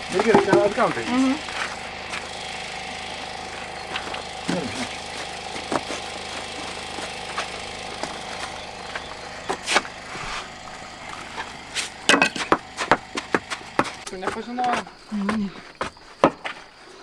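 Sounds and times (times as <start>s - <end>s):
steady hum: 0.0s - 16.8s
stones being tapped: 0.1s - 2.4s, 12.1s - 16.6s.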